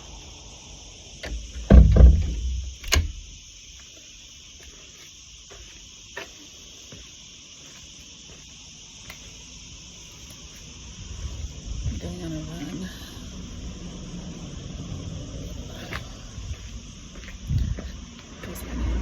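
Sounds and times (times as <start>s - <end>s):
insects buzzing: 0.0s - 19.0s
sharp knock: 1.7s - 3.0s.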